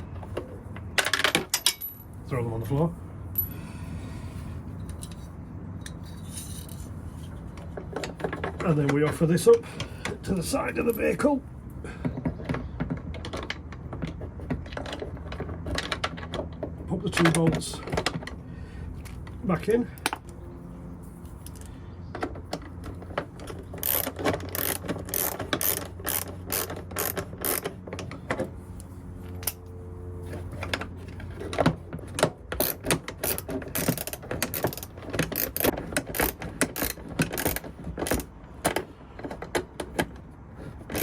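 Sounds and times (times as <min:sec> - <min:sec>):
low steady hum: 0:00.0 - 0:41.0
ratchet wrench clicking: 0:23.8 - 0:27.7, 0:32.6 - 0:38.3.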